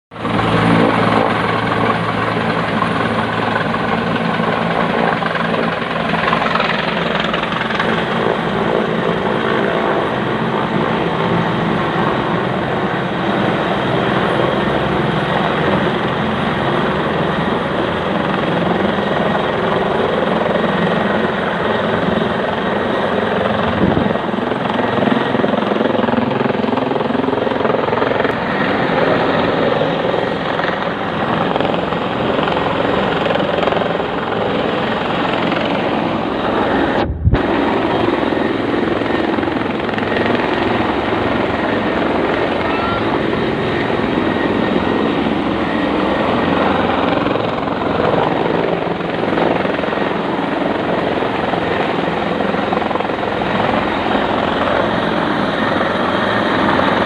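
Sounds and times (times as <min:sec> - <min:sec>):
helicopter engine and rotor: 0:00.1 - 0:57.0
rotor downwash wind rushing: 0:22.0 - 0:25.0, 0:27.6 - 0:42.4.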